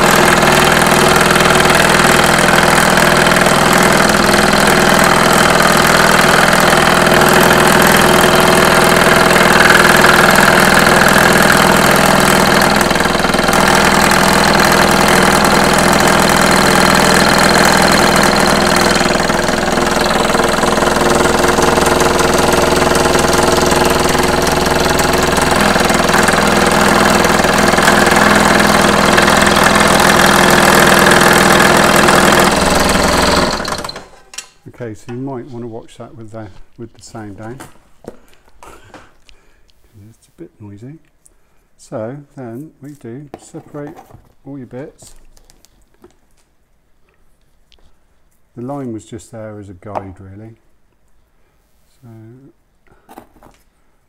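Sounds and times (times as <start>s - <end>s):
scroll saw cutting wood: 0.0s - 34.3s.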